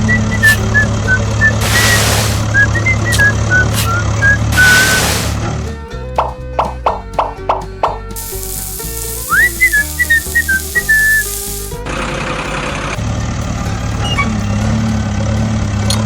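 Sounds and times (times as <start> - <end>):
whistled tune: 0.0 - 5.5, 6.6 - 11.8, 14.0 - 14.9
steady hiss: 0.2 - 5.5, 8.2 - 11.8
plucked background music: 2.5 - 16.0.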